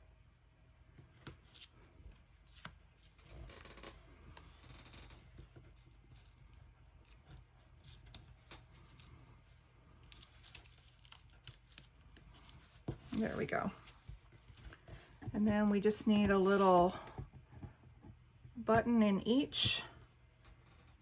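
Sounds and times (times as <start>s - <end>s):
paper rustling: 5.2s - 15.2s.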